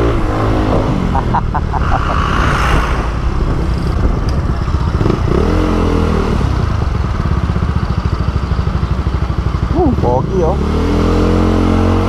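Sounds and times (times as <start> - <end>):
motorcycle engine running: 3.5 - 10.6.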